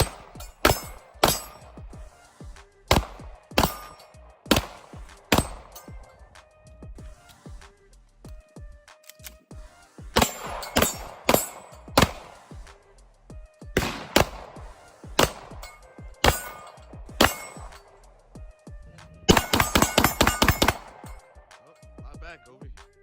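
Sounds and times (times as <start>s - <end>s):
pistol gunshots: 0.0s - 2.0s, 2.9s - 6.1s, 10.1s - 12.7s, 13.8s - 18.0s, 19.3s - 21.2s
background music: 0.0s - 23.0s.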